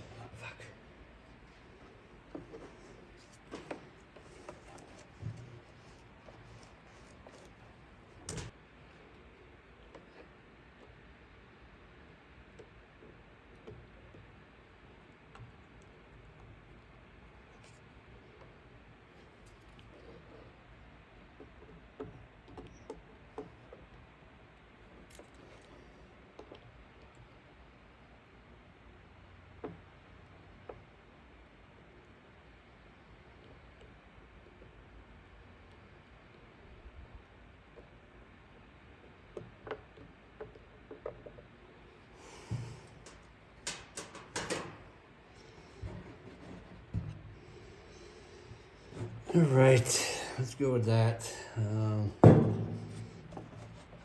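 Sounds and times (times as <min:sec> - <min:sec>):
steady low hum: 0:00.0 - 0:11.7, 0:41.6 - 0:54.0
dull thump: 0:52.2 - 0:54.0.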